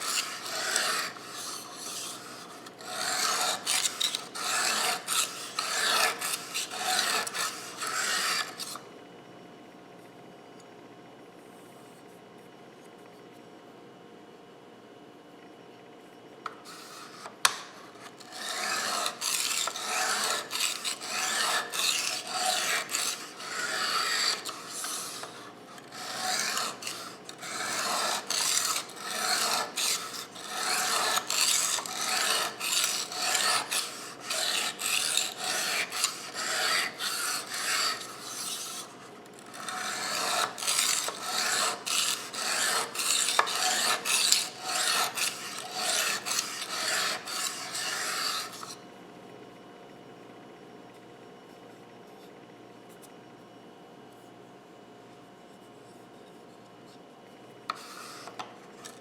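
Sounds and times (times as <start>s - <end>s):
knife rasping on sharpening stone: 0.0s - 8.8s, 18.2s - 48.8s, 57.7s - 59.0s.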